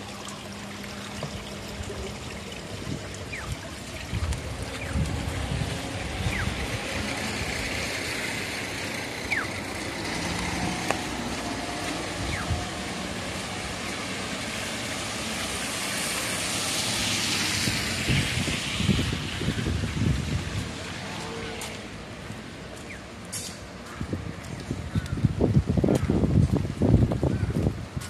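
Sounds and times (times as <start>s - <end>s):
street noise hiss: 0.0s - 28.0s
vehicle passing on wet road: 3.3s - 24.9s.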